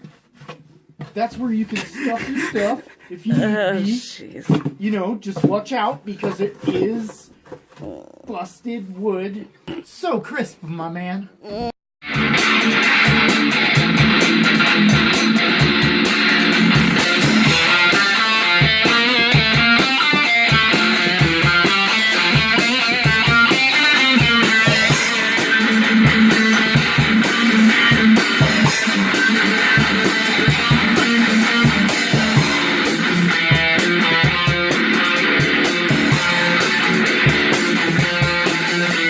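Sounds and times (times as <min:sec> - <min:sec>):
steady drum beat: 0:01.3 - 0:05.6, 0:12.5 - 0:39.0
guitar music: 0:12.0 - 0:39.0.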